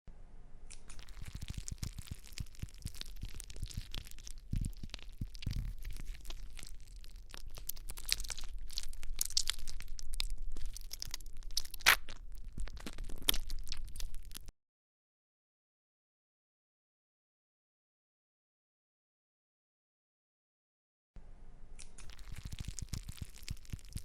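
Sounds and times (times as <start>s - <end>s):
sticky slime crackling by hand: 0.8s - 14.5s, 22.0s - 24.0s.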